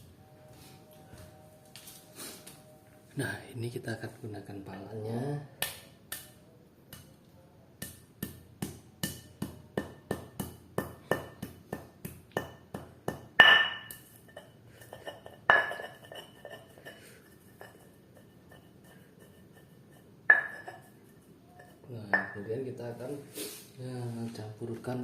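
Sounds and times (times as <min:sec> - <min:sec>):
loud knocks with metallic ring: 0:08.2 - 0:14.0, 0:20.3 - 0:20.6.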